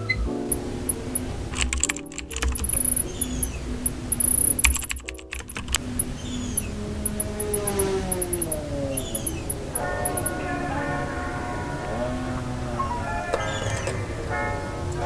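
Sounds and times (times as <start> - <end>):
soft background music: 0.0 - 15.0.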